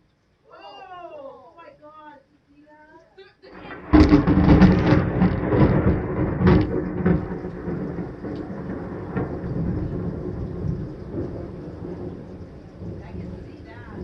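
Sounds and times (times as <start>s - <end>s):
heavy rain: 3.4s - 14.0s
thunder rumbling: 3.5s - 14.0s.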